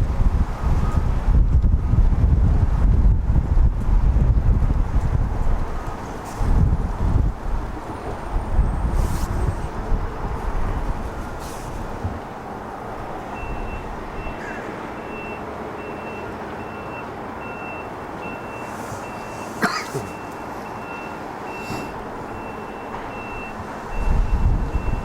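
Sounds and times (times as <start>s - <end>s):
traffic noise: 0.0s - 25.0s
wind: 0.0s - 25.0s
backup alarm beeping: 15.0s - 25.0s.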